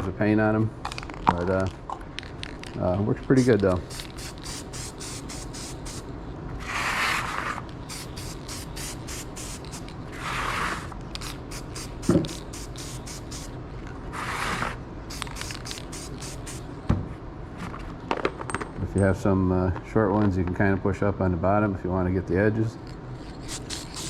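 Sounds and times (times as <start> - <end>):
spray paint can hissing: 3.4 - 6.1, 7.9 - 9.9, 11.2 - 13.5, 15.1 - 16.6, 23.2 - 24.0.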